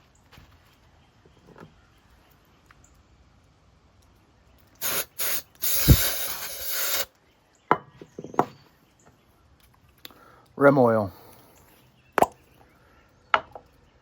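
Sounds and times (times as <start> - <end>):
compressed air blasts: 4.8 - 7.1.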